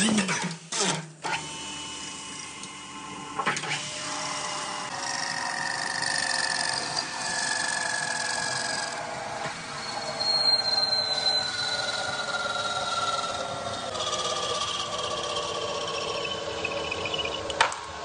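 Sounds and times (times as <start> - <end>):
power tool whining: 1.3 - 17.6.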